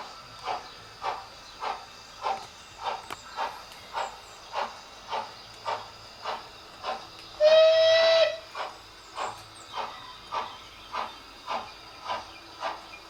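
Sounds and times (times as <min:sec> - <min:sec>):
model steam locomotive chuffing: 0:00.0 - 0:13.0
steam whistle blast: 0:07.4 - 0:08.5.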